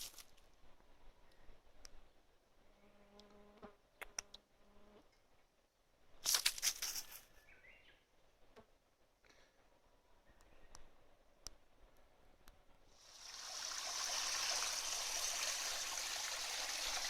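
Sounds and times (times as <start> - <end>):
rustle: 0.0 - 8.8.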